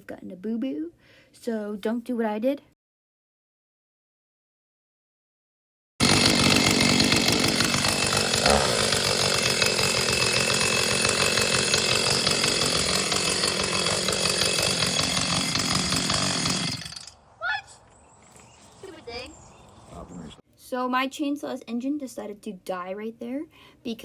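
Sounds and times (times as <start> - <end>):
chainsaw engine running: 6.0 - 17.2.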